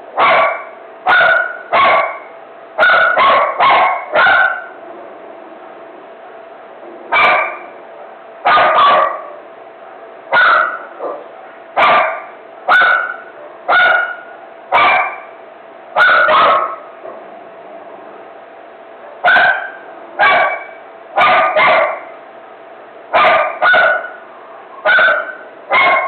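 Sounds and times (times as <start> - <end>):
dog barking: 0.2 - 4.8, 7.1 - 7.7, 8.4 - 9.4, 10.3 - 15.4, 16.0 - 17.2, 19.1 - 22.2, 23.2 - 26.0.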